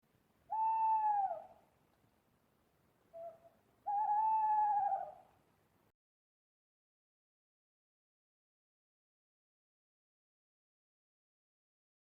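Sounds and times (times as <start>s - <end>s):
owl hooting: 0.5s - 1.6s, 3.1s - 5.3s.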